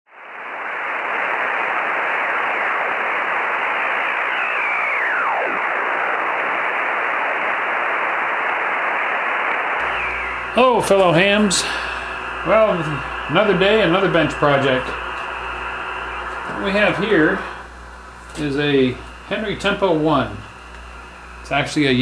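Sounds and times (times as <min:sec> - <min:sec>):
radio static hiss: 0:00.1 - 0:22.0
falling radio whistle: 0:00.3 - 0:17.6.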